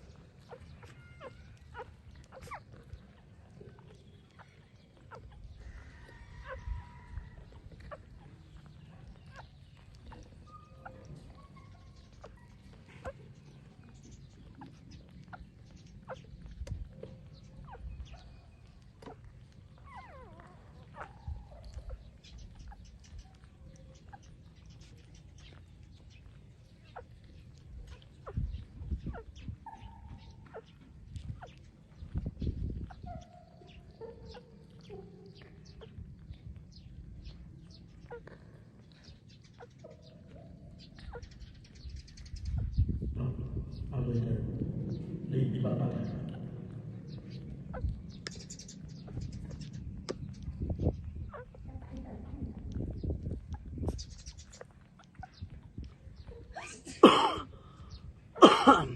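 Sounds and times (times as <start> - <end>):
puppies suckling: 0.0 - 42.8, 46.0 - 56.8
puppy high calls: 0.5 - 3.7, 6.4 - 13.3, 17.6 - 24.3, 29.1 - 30.8, 32.8 - 36.3.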